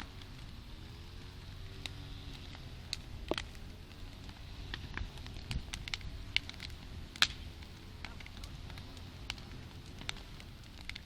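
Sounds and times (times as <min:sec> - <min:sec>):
campfire crackling and popping: 0:00.0 - 0:11.0
low steady rumble: 0:00.0 - 0:11.0.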